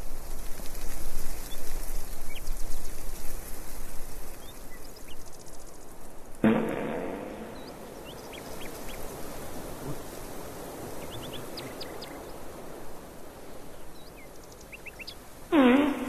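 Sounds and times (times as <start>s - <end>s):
outdoor background hiss: 0.0s - 16.0s
small birds chirping: 7.4s - 16.0s.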